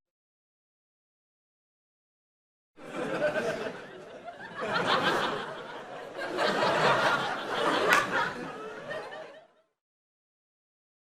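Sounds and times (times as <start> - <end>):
audience laughing: 2.8 - 9.7.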